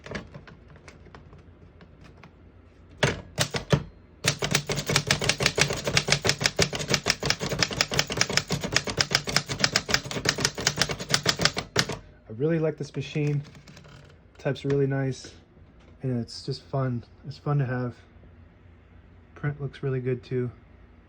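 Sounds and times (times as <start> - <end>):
typewriter key clacks: 3.0 - 12.0.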